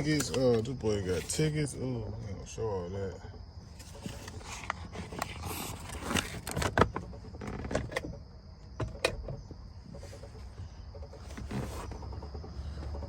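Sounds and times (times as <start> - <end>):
clicks and knocks of handling: 0.0 - 1.3.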